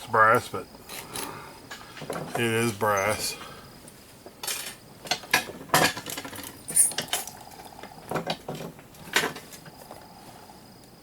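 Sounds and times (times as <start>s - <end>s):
metal parts and tools clinking: 4.4s - 7.4s.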